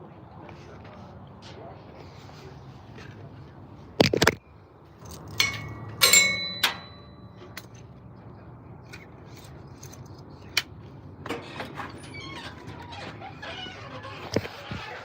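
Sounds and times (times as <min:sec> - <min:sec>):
metallic clinks and knocks: 0:05.0 - 0:07.9.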